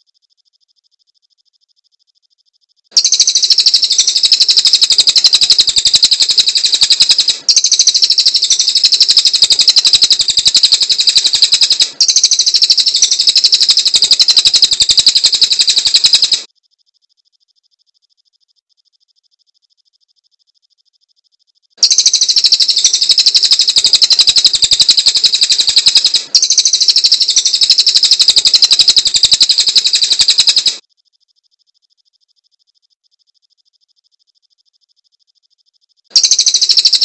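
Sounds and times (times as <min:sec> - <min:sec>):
songbird fast trilled song: 0:02.9 - 0:16.5, 0:21.8 - 0:30.8, 0:36.1 - 0:37.0.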